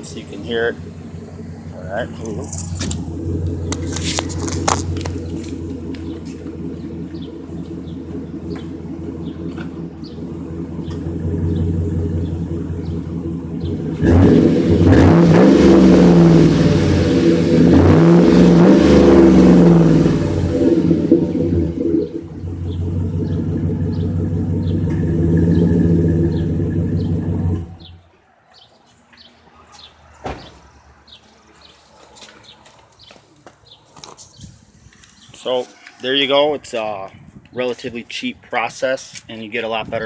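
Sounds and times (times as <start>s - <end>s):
truck engine idling and revving: 0.0s - 28.4s.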